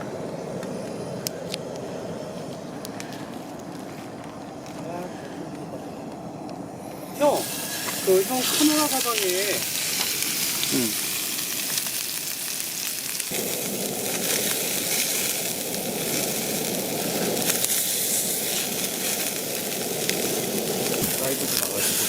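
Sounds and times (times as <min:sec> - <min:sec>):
low rushing noise: 0:00.0 - 0:09.8
burning wood crackling: 0:00.0 - 0:22.0
fat sizzling on a grill: 0:06.9 - 0:22.0.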